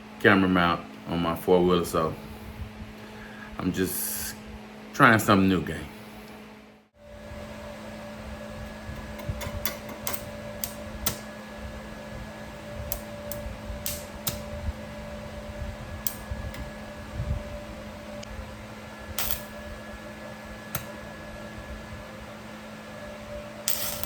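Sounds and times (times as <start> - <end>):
low hum: 5.8 - 24.0.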